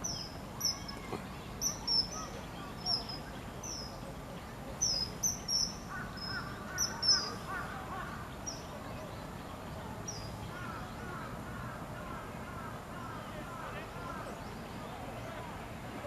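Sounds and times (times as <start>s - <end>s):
kingfisher high shrill calls: 4.8s - 7.7s.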